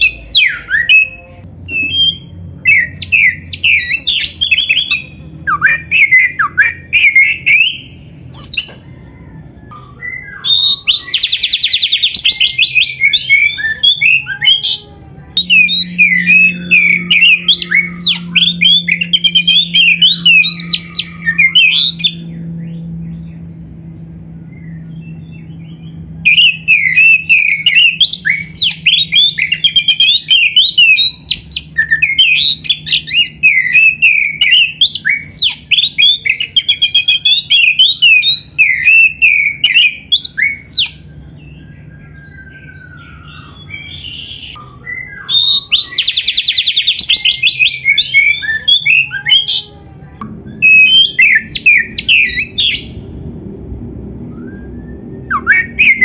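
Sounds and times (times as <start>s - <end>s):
magpie-robin singing: 0.0s - 53.7s, 54.3s - 56.0s.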